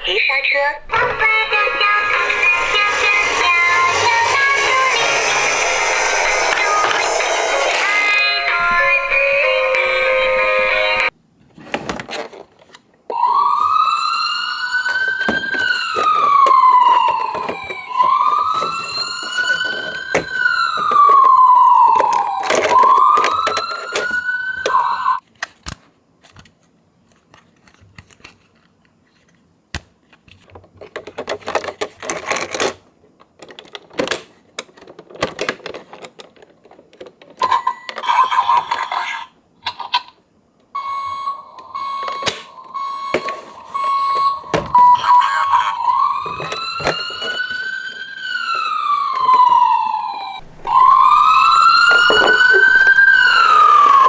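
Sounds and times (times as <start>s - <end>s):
toy siren wailing: 0.9s - 11.1s, 13.1s - 25.2s, 37.4s - 38.7s, 40.8s - 54.0s.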